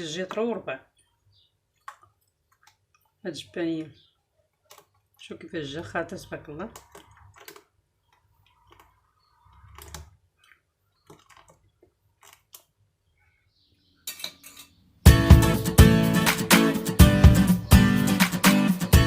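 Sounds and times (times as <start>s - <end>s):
dishes clinking: 14.0s - 14.8s
guitar music: 15.1s - 19.0s.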